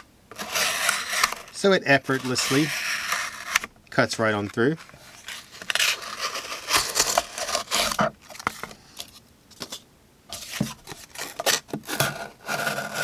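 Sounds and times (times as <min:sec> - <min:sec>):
knife slicing cardboard: 0:00.0 - 0:03.7, 0:04.8 - 0:08.7, 0:10.3 - 0:13.0.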